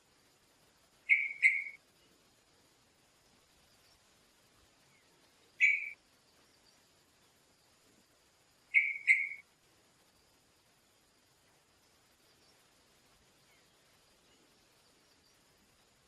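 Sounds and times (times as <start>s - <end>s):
bird chirps: 1.0s - 2.1s, 4.8s - 6.9s, 8.7s - 9.5s.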